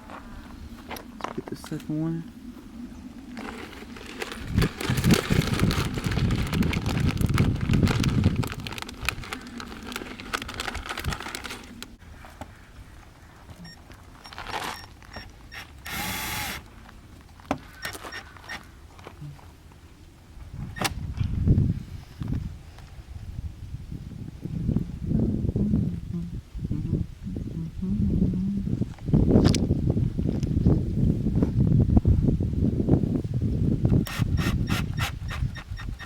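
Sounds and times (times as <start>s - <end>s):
power drill whirring: 15.5s - 16.6s, 34.0s - 36.0s.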